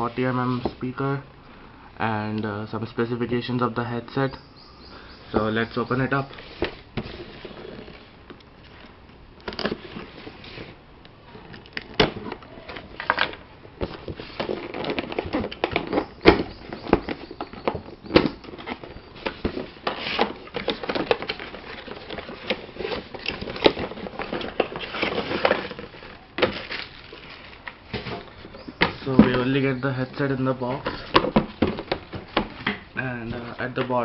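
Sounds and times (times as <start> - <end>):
cardboard box packaging crackling: 11.4 - 32.7.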